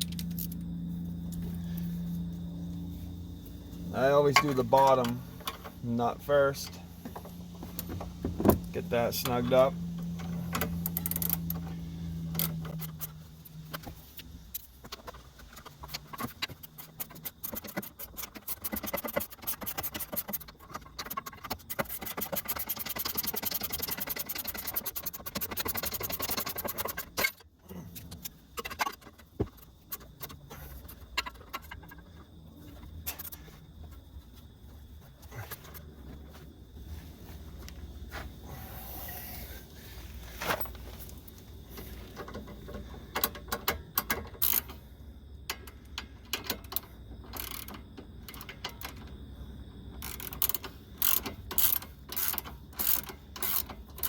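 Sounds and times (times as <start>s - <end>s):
low hum: 0.0s - 18.3s
ratchet wrench clicking: 9.1s - 27.4s, 43.1s - 44.8s, 45.5s - 49.1s, 50.0s - 54.0s.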